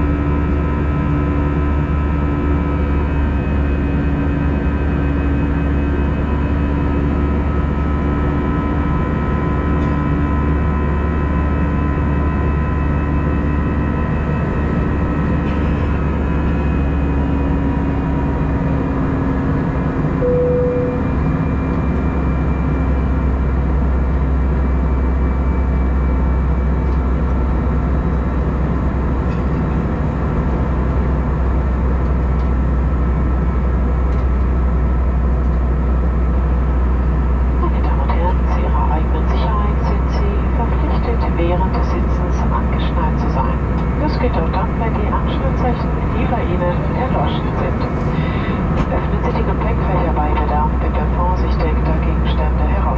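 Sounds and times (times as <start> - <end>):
jet engine and airflow roar: 0.0 - 52.9
steady hum tones: 0.0 - 52.9
short single tone: 20.2 - 21.4.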